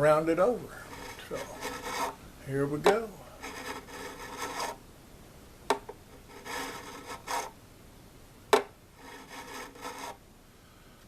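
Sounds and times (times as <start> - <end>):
file rasping over frets: 0.9 - 2.2, 3.4 - 4.8, 6.3 - 7.5, 9.0 - 10.2.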